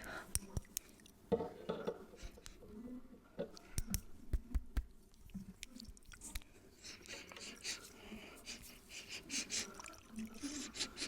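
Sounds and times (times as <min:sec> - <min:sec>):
sharp clicks and taps: 0:03.6 - 0:04.9.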